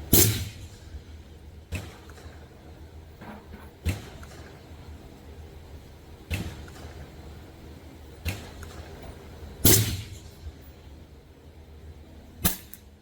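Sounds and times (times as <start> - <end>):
rifle shot: 0.1 - 0.8, 12.4 - 12.8.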